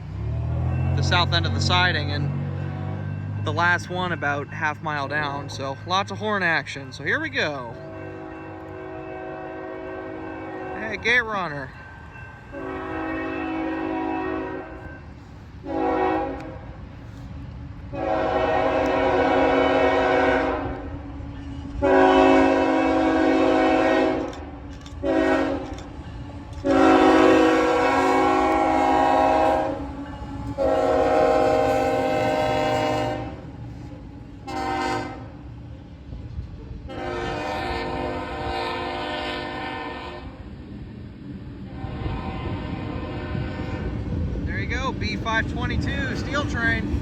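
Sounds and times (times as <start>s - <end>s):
low rumble of train: 0.0s - 47.0s
locomotive air horn blasts: 7.8s - 10.9s, 12.5s - 14.9s, 15.6s - 16.7s, 17.9s - 20.9s, 21.8s - 24.4s, 25.0s - 33.5s, 34.4s - 35.4s, 36.9s - 40.4s, 41.7s - 44.0s.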